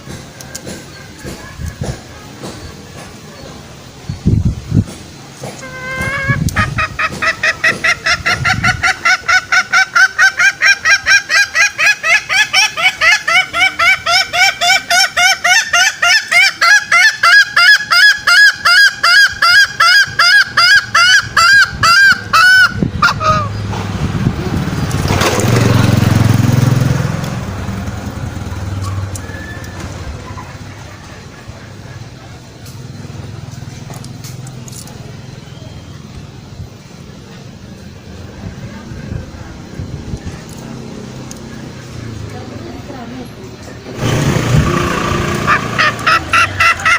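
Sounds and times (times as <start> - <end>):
junglefowl repeated calls: 5.5 - 23.6, 44.0 - 46.9
low rumble with hiss: 19.0 - 46.9.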